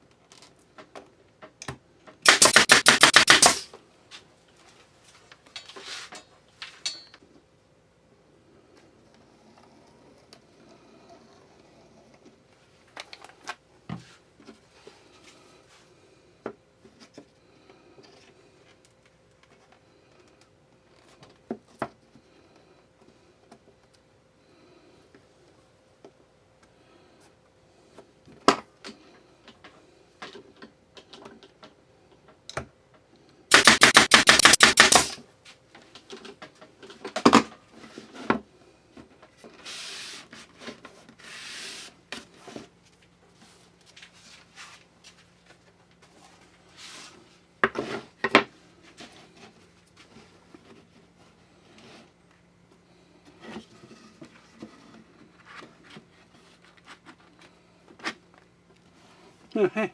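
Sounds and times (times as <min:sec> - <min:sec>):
loud rapid rattle of strikes: 0:02.3 - 0:03.7.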